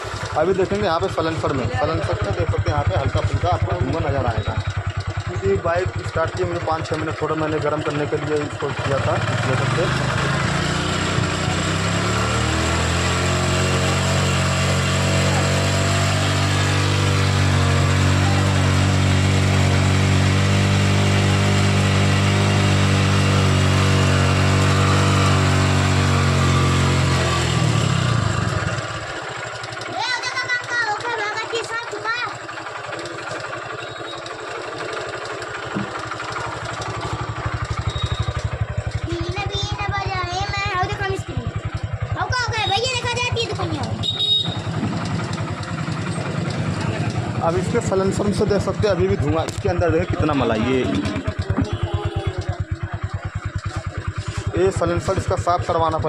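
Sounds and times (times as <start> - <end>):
motorcycle engine idling: 0.0 - 56.0.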